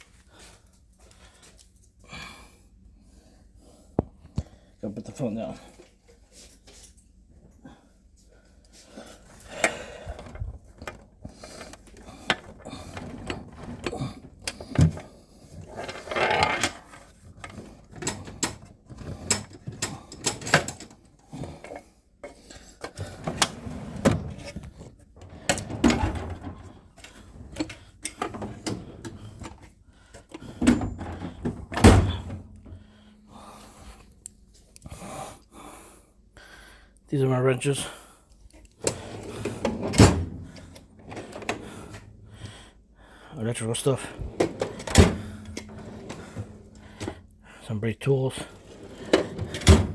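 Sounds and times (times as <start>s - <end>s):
metal drawers sliding open and shut: 9.5s - 21.8s, 22.9s - 29.7s, 30.3s - 32.8s, 38.8s - 42.2s, 43.9s - 47.2s, 48.5s - 49.9s
drawer scraping slide: 11.5s - 20.8s, 23.0s - 29.6s, 38.8s - 42.1s, 44.0s - 47.2s, 48.5s - 49.9s.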